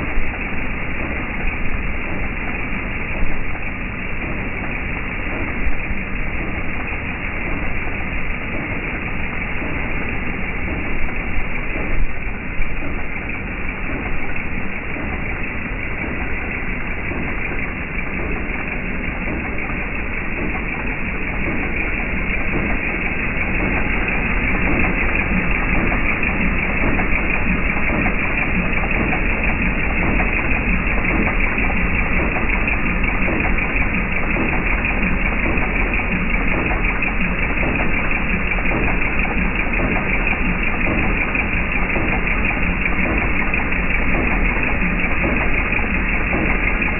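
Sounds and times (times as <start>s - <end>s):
engine knocking: 0.0s - 46.9s
car engine running: 0.1s - 46.9s.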